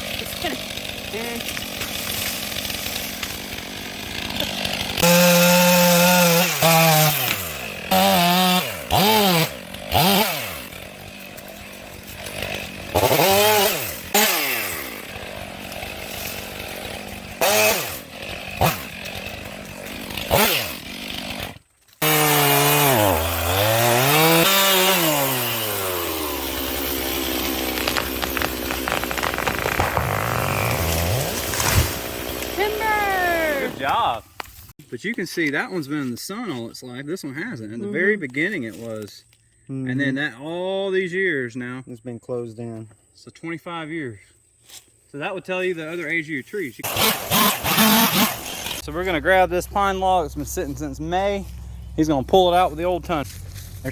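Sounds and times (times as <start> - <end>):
chainsaw cutting wood: 0.0 - 34.8, 46.8 - 53.4.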